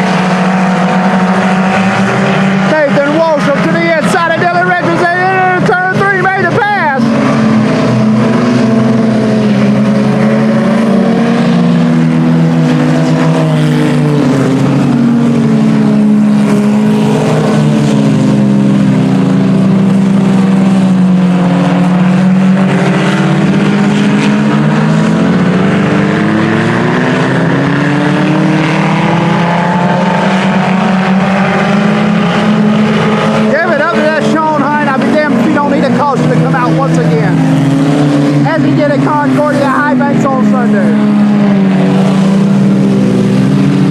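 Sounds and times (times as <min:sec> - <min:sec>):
race car engines revving: 0:00.0 - 0:43.9.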